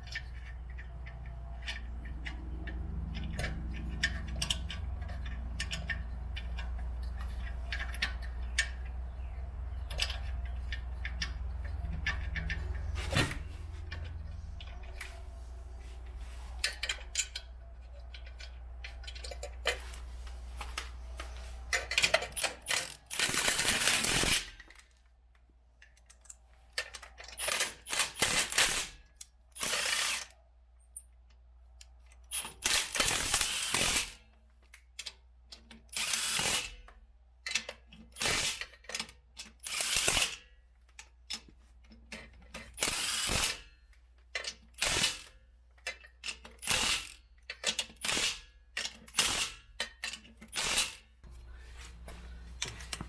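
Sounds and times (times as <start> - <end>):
wrench running down lug nuts: 21.7 - 24.9, 26.9 - 30.3, 32.1 - 34.2, 35.8 - 36.8, 37.6 - 40.4, 42.6 - 51.1.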